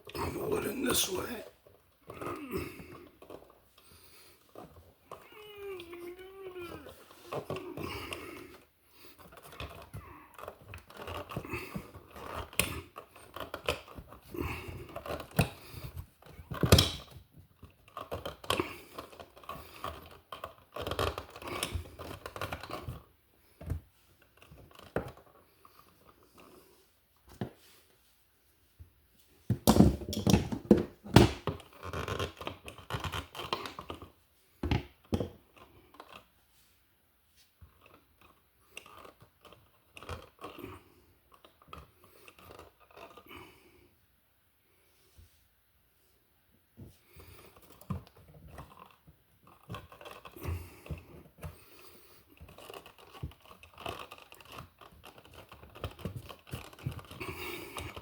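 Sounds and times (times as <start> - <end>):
wires scratching and clicking: 0.0 - 23.1, 31.2 - 34.2, 34.9 - 36.4, 37.6 - 43.4, 47.1 - 58.0.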